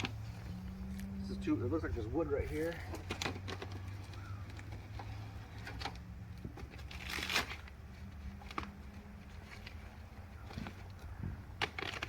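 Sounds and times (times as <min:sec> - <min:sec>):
plastic wrap peeled and crumpled: 0:06.8 - 0:10.5.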